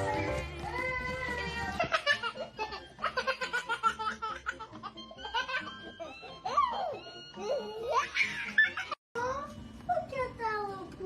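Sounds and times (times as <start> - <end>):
background music: 0.0 - 11.0
baby laughing: 1.4 - 9.0.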